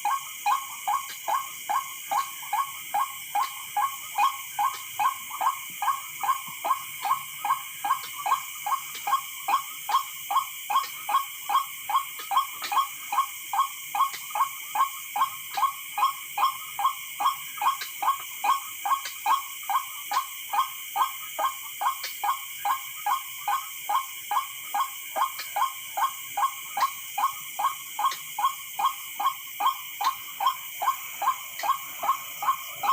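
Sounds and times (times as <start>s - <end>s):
waterhen calls: 27.6s - 32.9s.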